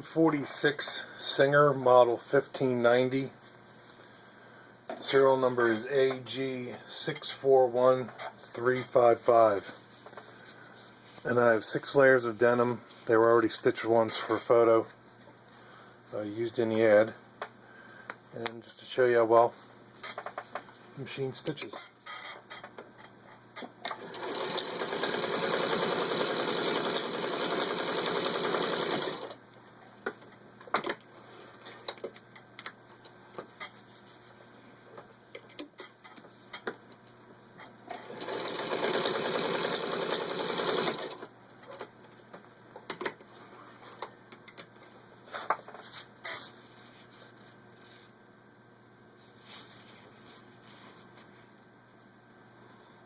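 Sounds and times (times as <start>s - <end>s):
sewing machine stitching: 23.9s - 29.4s, 37.9s - 41.3s.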